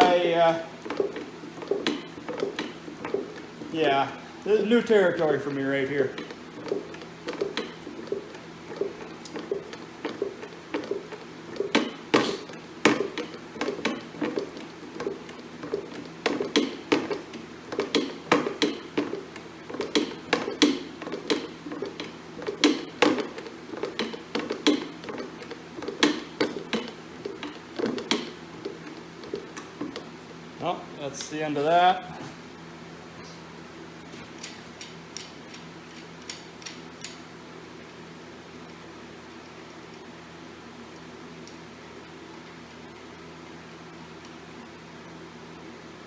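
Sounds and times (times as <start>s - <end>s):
sleeve puller clicks and knocks: 6.1s - 30.1s.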